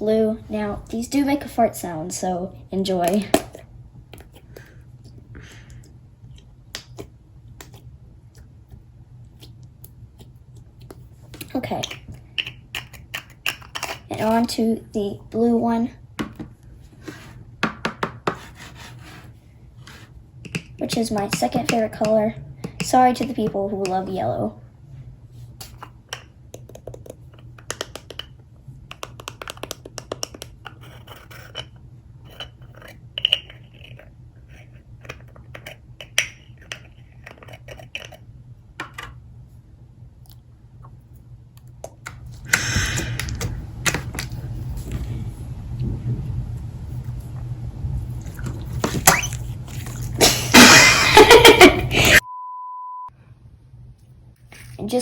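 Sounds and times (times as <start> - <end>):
slime squishing: 48.2 - 50.2.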